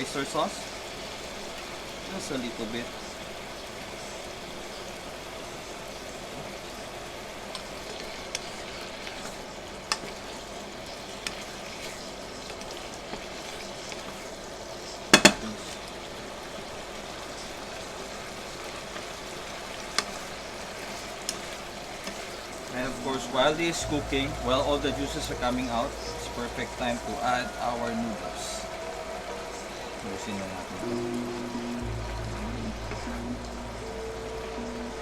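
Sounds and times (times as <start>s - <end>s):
food sizzling in a pan: 0.0s - 35.0s
utensil clattering against pan: 15.1s - 15.6s.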